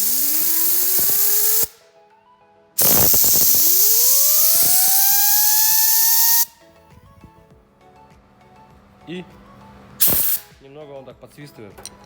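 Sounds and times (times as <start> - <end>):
blower motor whining: 0.0 - 1.7, 2.8 - 6.5
compressed air hissing: 0.0 - 1.8, 2.8 - 6.5, 10.0 - 10.6.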